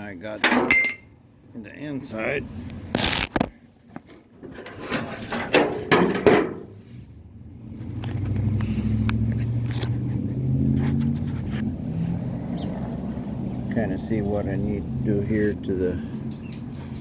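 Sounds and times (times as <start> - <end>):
handling clatters and knocks: 0.3 - 1.2, 3.0 - 6.8, 14.1 - 17.0.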